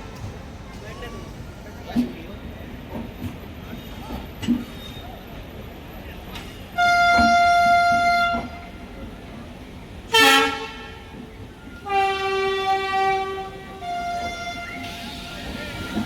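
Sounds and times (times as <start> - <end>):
locomotive horn blasts: 6.8 - 8.8, 10.1 - 11.2, 11.8 - 15.8.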